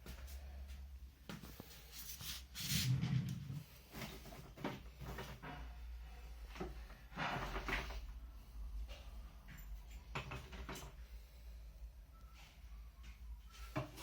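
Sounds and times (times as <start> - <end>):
objects knocking and clunking: 2.9 - 5.9, 8.8 - 11.1.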